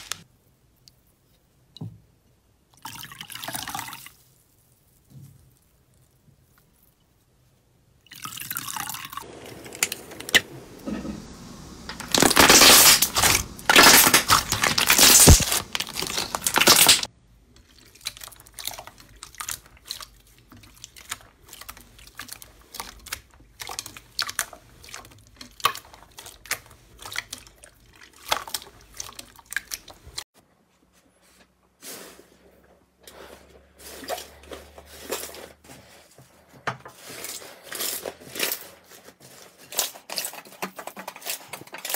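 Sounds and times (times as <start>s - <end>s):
slime squelching and popping: 11.9s - 30.2s.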